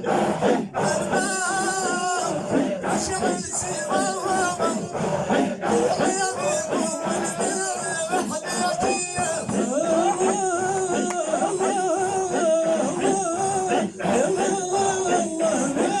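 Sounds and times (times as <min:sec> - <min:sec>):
men singing a devotional chant: 0:00.0 - 0:16.0.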